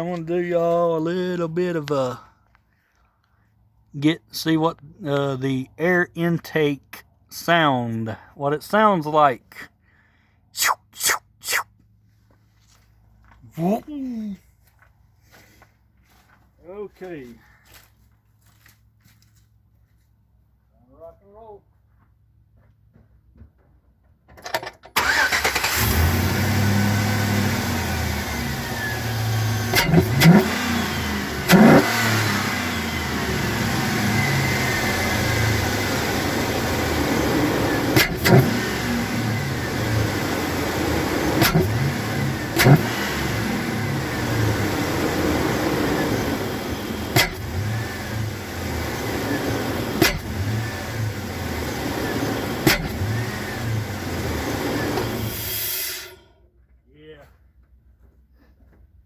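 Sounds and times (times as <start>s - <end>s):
engine revving with intake roar: 25.0s - 56.2s.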